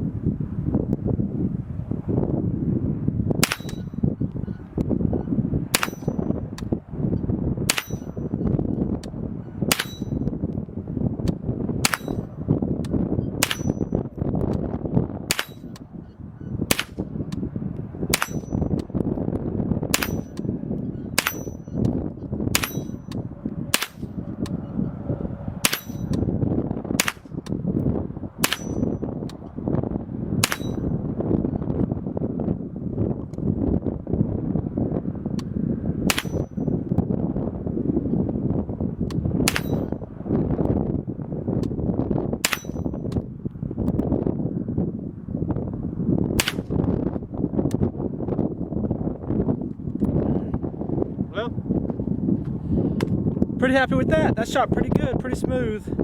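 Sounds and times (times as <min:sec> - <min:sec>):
wind noise on microphone: 0:00.0 - 0:56.0
rifle shots with metallic ring: 0:03.4 - 0:04.0, 0:05.8 - 0:06.3, 0:07.7 - 0:08.3, 0:09.7 - 0:10.3, 0:11.8 - 0:12.3, 0:13.4 - 0:14.0, 0:15.3 - 0:15.8, 0:18.1 - 0:18.7, 0:19.9 - 0:20.4, 0:21.2 - 0:21.8, 0:22.6 - 0:23.1, 0:23.8 - 0:24.2, 0:25.6 - 0:26.2, 0:28.4 - 0:29.0, 0:30.4 - 0:30.9, 0:36.1 - 0:36.7, 0:39.5 - 0:40.0, 0:42.4 - 0:42.9.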